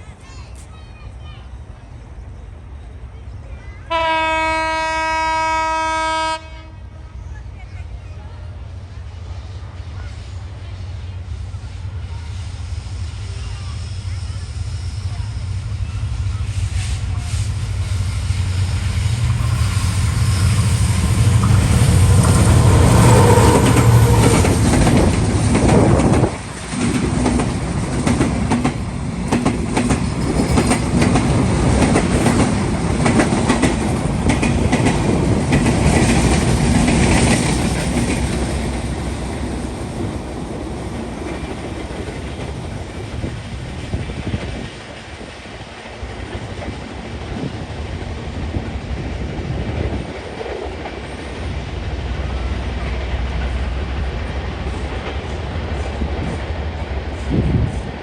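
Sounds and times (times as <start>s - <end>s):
diesel locomotive engine rumble: 0.0s - 58.0s
train coaches clattering over rail joints: 19.3s - 39.2s.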